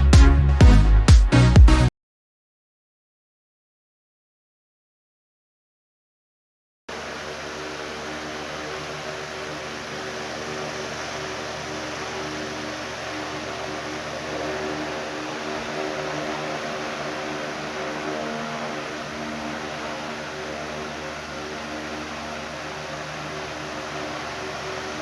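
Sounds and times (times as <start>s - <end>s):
wall fan running: 6.9s - 25.0s.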